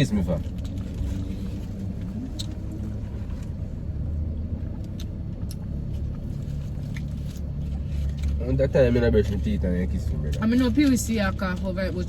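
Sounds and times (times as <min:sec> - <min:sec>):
car rumbling: 0:00.0 - 0:12.0.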